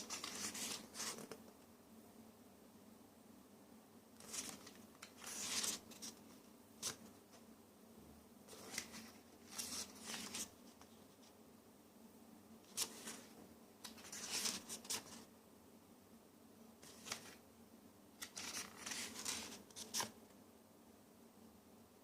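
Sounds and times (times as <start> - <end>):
book and packaging rustling: 0.0 - 1.5, 4.2 - 7.4, 8.5 - 11.4, 12.7 - 15.3, 16.8 - 17.4, 18.2 - 20.2.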